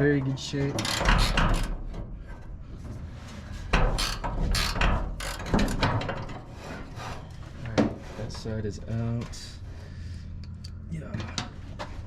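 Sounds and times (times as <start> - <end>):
metal clunks and scraping: 0.0 - 8.6.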